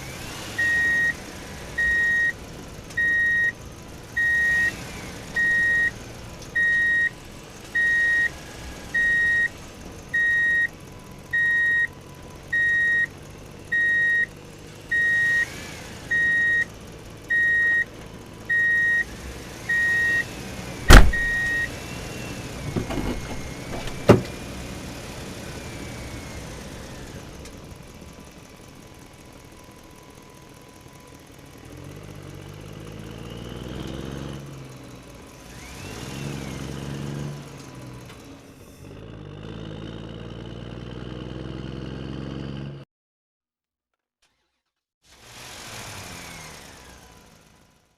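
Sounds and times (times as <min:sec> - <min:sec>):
reversing beeper: 0:05.4 - 0:05.9, 0:20.9 - 0:21.8.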